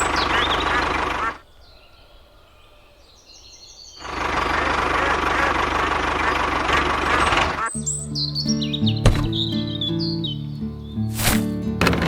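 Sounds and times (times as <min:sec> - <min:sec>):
faint bird chirps: 0:00.0 - 0:11.1
engine chugging: 0:04.0 - 0:07.7.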